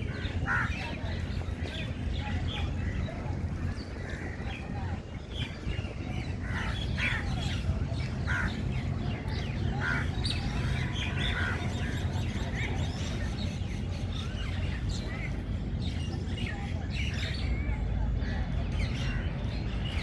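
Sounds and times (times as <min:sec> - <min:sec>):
birds chirping and calling: 0:00.0 - 0:20.0
steady low rumble: 0:00.0 - 0:20.0.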